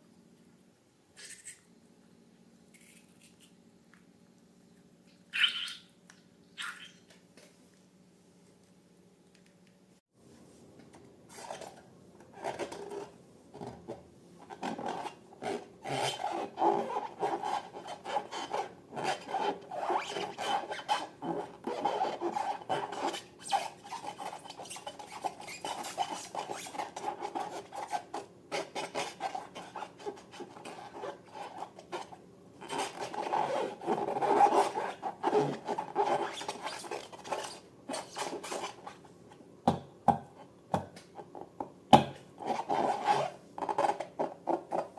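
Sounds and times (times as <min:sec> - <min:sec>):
rough scraping and rubbing: 0:14.6 - 0:39.0, 0:42.4 - 0:44.9.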